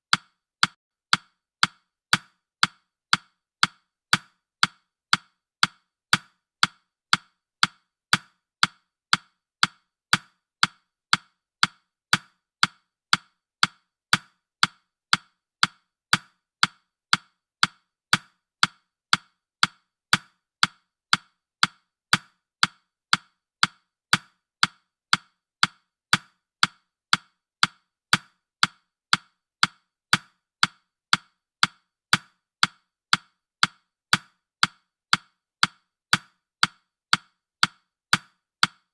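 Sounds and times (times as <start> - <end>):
clock ticking: 0.0 - 26.4.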